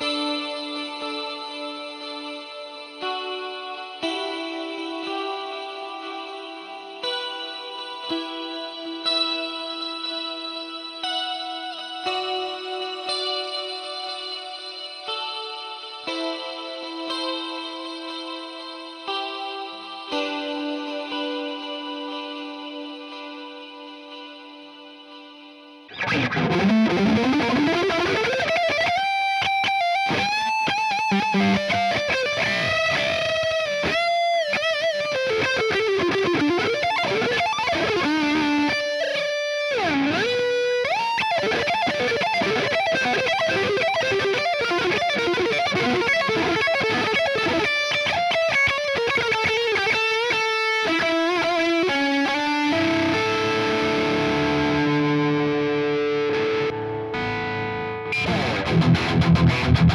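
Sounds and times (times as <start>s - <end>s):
distorted electric guitar lead: 25.8s - 59.9s.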